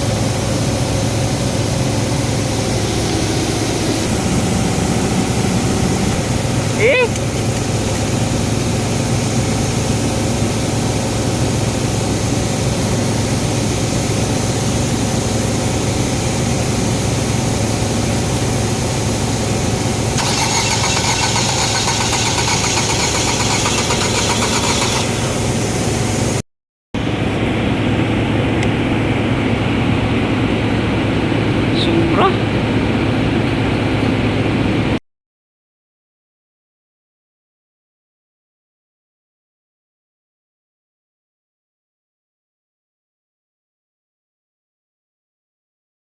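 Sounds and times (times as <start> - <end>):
car engine idling: 0.0 - 11.5, 19.9 - 26.4
rasping fast-pulsing noise: 20.2 - 26.4.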